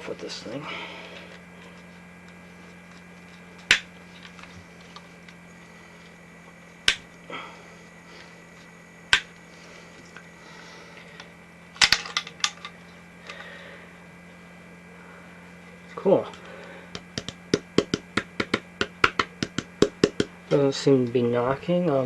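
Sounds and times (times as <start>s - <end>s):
steady low hum: 0.0s - 22.0s
handling clicks and taps: 17.0s - 20.3s.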